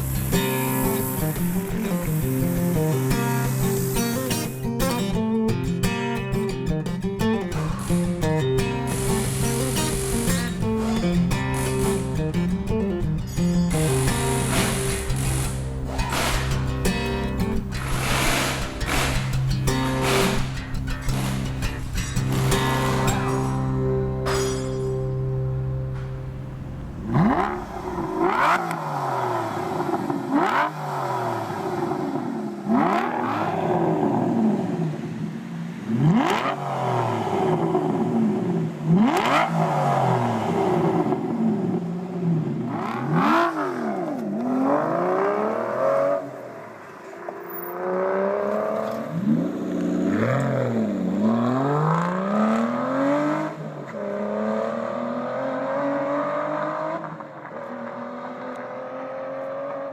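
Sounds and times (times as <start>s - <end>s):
sports car engine revving: 7.6s - 24.3s, 24.9s - 34.7s.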